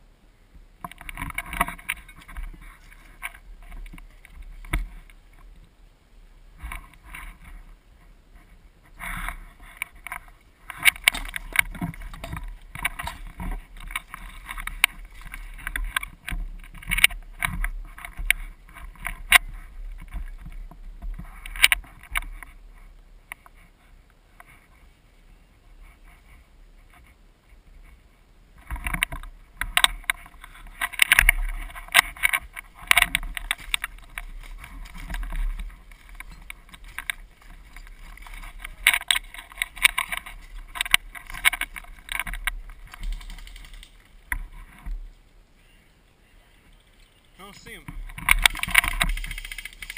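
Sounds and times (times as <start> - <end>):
camera handling rustling: 9.0 - 20.3, 28.8 - 45.0, 48.0 - 49.9.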